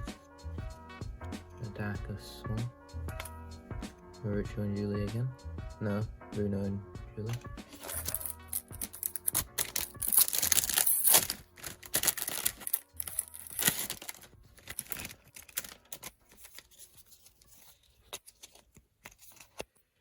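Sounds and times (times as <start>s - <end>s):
plastic packaging tearing and crinkling: 7.7s - 19.7s.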